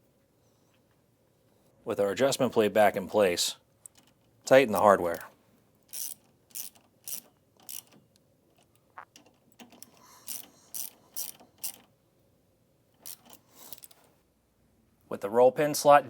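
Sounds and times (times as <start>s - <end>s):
ratchet wrench clicking: 5.9s - 8.0s, 9.6s - 11.9s, 13.0s - 14.0s.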